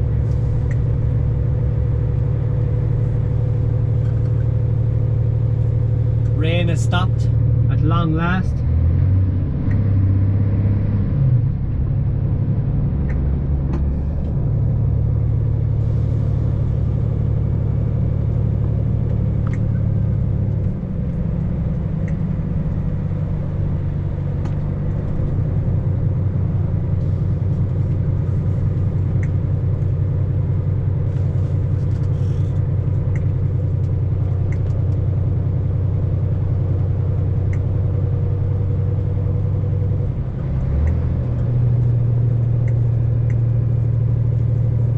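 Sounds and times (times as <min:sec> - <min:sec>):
vehicle engine and road drone: 0:00.0 - 0:44.9
faint ticks: 0:42.6 - 0:43.4.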